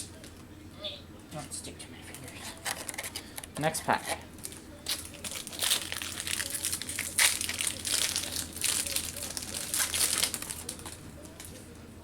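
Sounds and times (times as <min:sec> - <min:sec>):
foil wrapper crinkling: 0:04.4 - 0:11.6.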